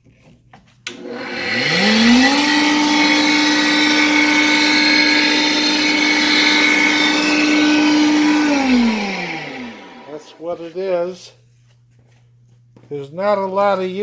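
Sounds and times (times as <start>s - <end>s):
electric motor whining up and humming: 0.9s - 11.0s.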